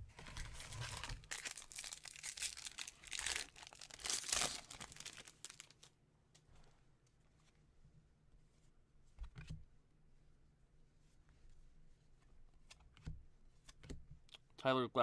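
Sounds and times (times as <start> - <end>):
faint handling noises: 0.1 - 7.7
foil wrapper crinkling and tearing: 0.2 - 5.9.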